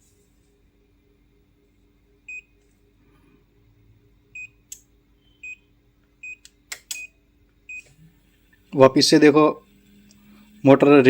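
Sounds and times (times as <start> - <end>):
sharp clicks: 6.4 - 7.1.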